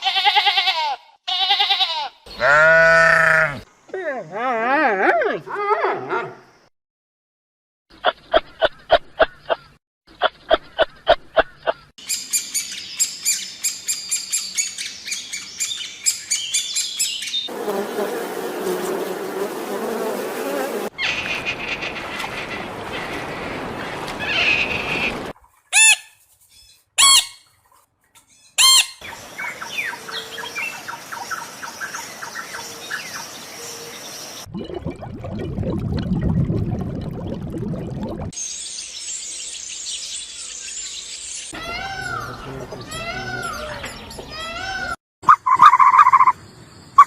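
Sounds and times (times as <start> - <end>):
loud animal squawks: 0.0 - 3.6, 45.2 - 46.3
high animal chirping: 45.2 - 46.4.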